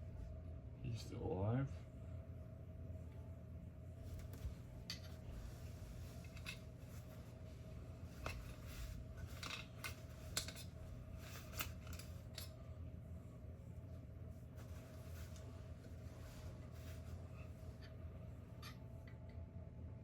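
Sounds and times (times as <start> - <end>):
faint steady hum: 0.0 - 20.0
small clicks and clinks of parts: 9.2 - 10.8, 11.5 - 12.6.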